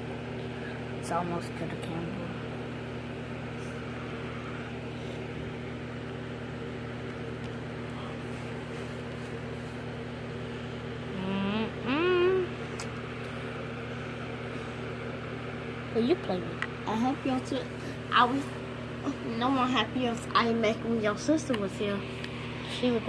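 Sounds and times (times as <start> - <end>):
machine humming: 0.0 - 23.0.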